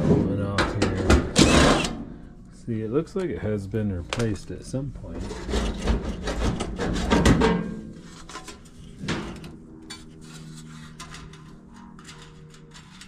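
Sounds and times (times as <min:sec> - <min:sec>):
sheet metal clattering and scraping: 0:00.0 - 0:02.0, 0:05.0 - 0:13.0.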